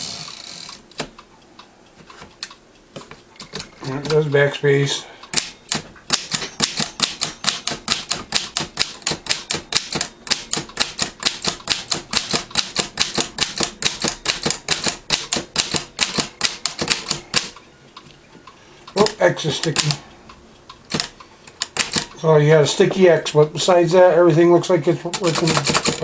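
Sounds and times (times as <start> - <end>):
typewriter keys clacking: 5.4 - 17.5, 25.1 - 26.0.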